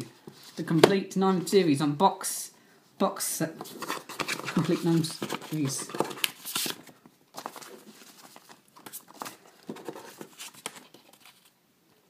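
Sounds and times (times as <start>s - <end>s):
clicks and taps handling packaging: 3.6s - 11.5s.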